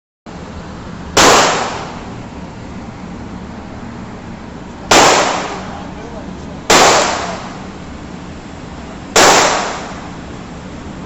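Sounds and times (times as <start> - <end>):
handgun shots with echo: 1.2 - 2.0, 4.9 - 5.7, 6.7 - 7.6, 9.2 - 10.1.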